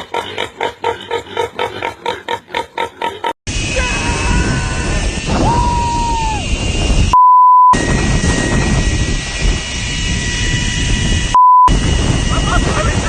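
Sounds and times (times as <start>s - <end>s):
censor bleeps: 7.2s - 7.8s, 11.4s - 11.7s
loud engine-like noise with whine: 7.8s - 13.0s.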